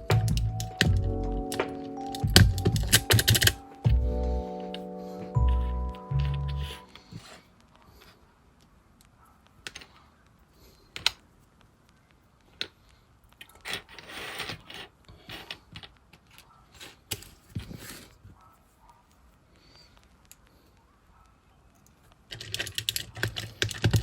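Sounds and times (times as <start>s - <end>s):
plastic keyboard key clicks: 0.1s - 3.7s, 22.3s - 24.0s.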